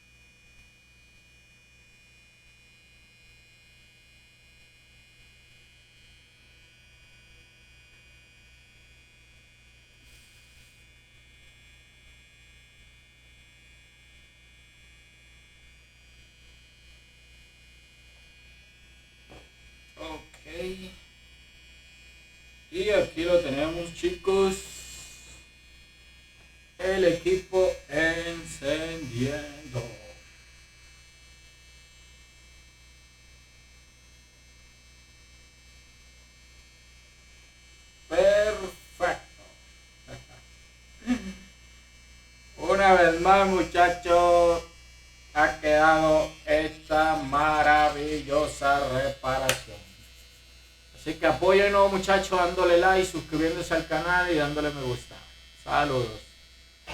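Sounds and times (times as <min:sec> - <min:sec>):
low electrical hum: 0:00.0 - 0:56.9
faint high steady tones: 0:21.9 - 0:32.8, 0:37.0 - 0:40.4, 0:42.3 - 0:56.4.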